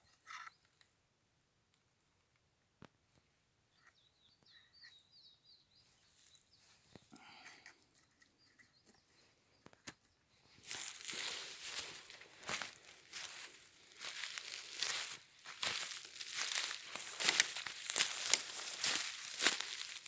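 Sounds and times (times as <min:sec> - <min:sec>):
bird chirping: 0:03.7 - 0:06.9, 0:08.0 - 0:20.0
dry vegetation rustling: 0:10.5 - 0:20.0.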